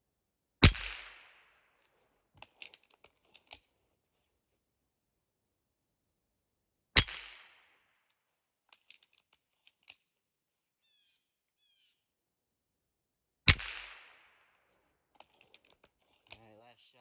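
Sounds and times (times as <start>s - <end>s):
pellet rifle shot: 0.6s - 1.2s, 7.0s - 7.5s, 13.5s - 14.3s
bird chirps: 10.8s - 12.0s.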